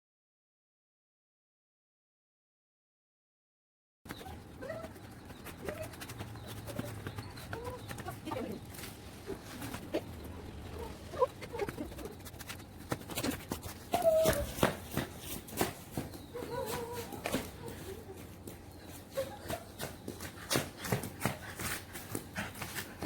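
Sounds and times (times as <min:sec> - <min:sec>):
high-pitched animal calls: 0:09.3 - 0:12.3.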